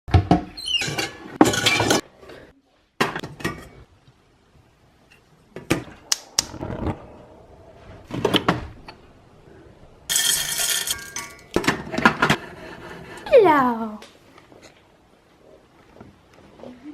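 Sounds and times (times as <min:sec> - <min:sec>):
pot and lid clinking: 0:10.1 - 0:11.8.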